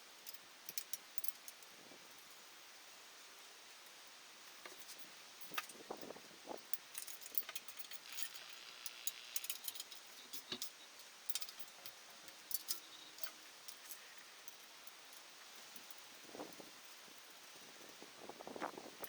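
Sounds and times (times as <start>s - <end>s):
metal parts and tools clinking: 6.8s - 11.8s.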